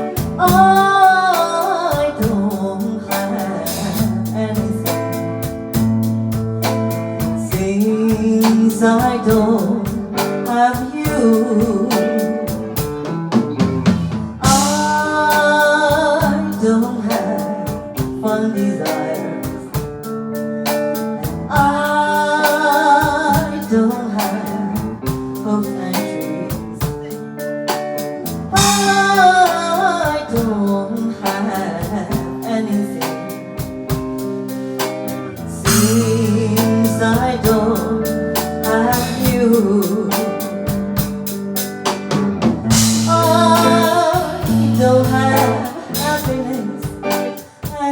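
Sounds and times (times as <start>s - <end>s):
person singing: 0.0s - 5.9s, 6.6s - 13.5s, 14.1s - 47.9s
slow ballad with guitar: 0.0s - 47.9s
steady drum beat: 0.0s - 47.9s
wavering lead melody: 41.7s - 47.4s.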